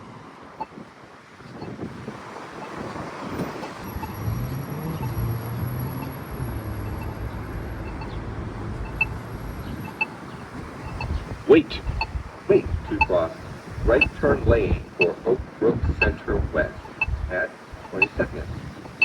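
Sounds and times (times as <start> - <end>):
pedestrian signal locator ticks: 0.6 - 0.8, 1.5 - 1.8, 2.6 - 19.0
vehicle engine passing: 3.3 - 11.4.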